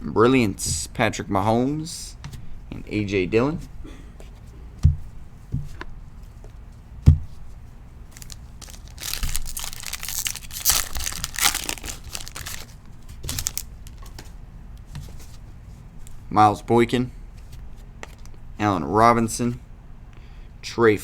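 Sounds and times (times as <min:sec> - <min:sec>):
card pack wrapper tearing: 0:08.1 - 0:14.1.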